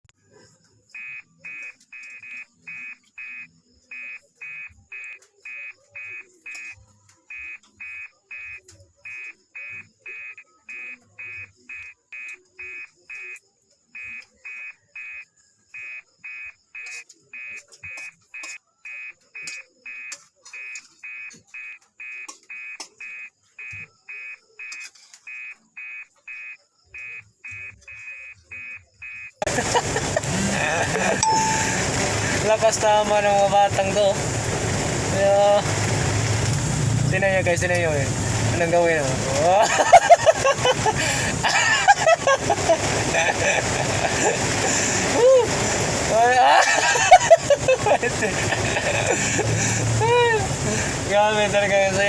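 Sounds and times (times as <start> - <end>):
electronic beeper short high beeps: 1.0 - 13.4, 15.8 - 29.4, 31.2 - 32.4.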